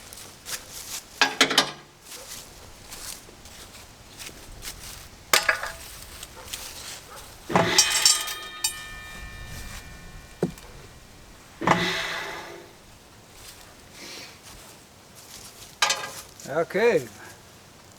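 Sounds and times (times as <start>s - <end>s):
metal clanks and knocks: 1.2s - 1.9s, 5.3s - 13.6s, 15.8s - 16.3s
saw blade ringing: 7.5s - 12.8s.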